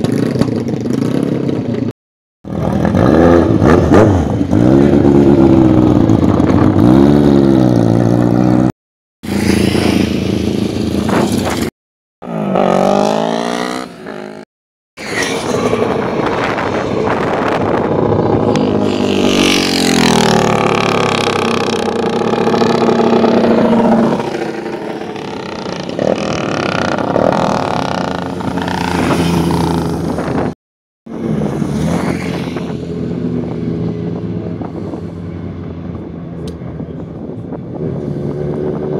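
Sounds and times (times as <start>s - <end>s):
racing motorcycle engines revving: 15.1s - 38.9s.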